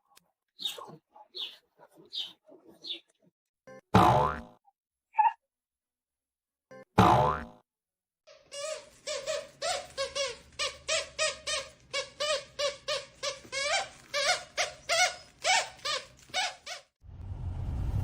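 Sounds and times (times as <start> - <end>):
dog whining yips: 9.1 - 16.8.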